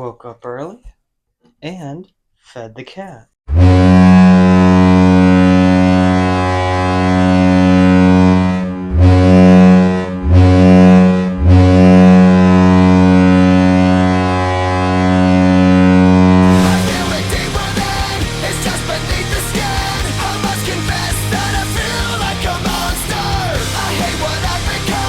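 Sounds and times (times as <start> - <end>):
arena goal horn blowing: 3.5 - 17.8
rock music: 16.4 - 25.0.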